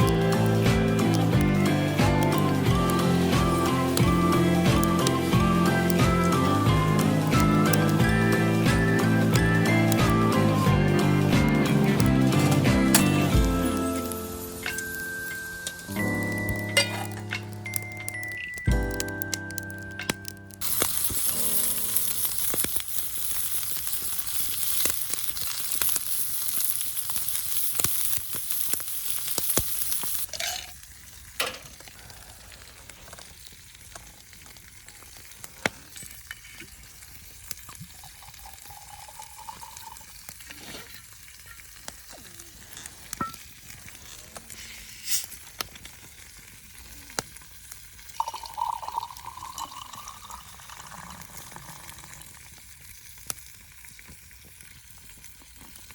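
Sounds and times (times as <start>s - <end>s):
food sizzling in a pan: 0.0s - 55.9s
clicks and pops: 15.6s - 30.5s.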